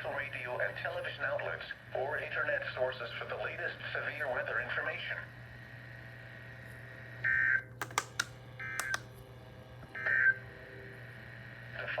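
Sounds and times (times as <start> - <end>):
sharp clicks: 7.8 - 9.1.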